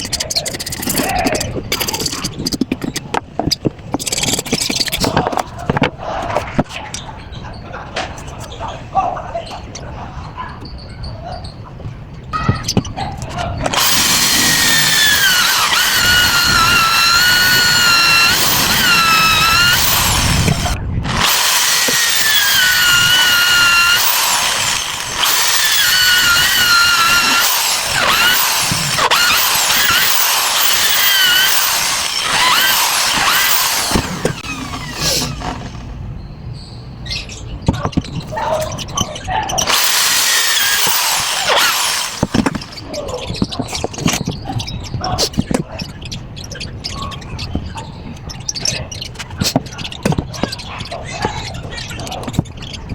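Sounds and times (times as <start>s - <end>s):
electric power drill whining: 13.7s - 36.0s, 39.6s - 42.9s.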